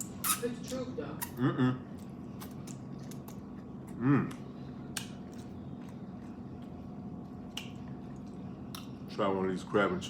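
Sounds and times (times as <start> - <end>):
chewing food: 1.9 - 9.2.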